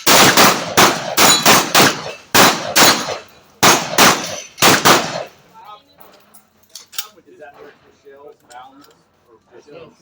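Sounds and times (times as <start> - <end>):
bullets hitting steel targets: 0.0 - 5.3
shotgun blasts: 0.0 - 5.4.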